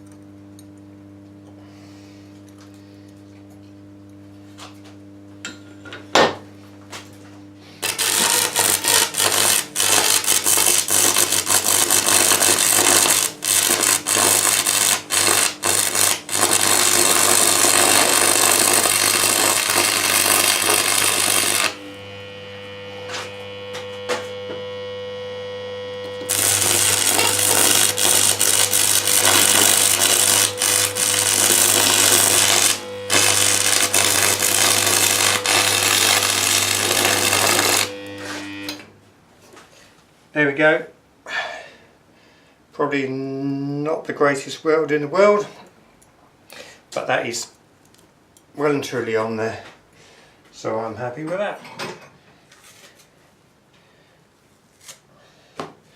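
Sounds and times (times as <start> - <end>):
electrical hum: 0.0 - 39.7
arc welding crackle: 7.7 - 38.8.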